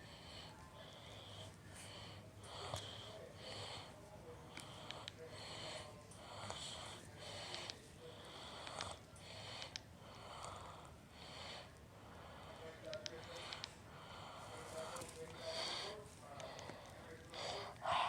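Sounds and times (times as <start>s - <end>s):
person breathing: 13.3s - 18.0s.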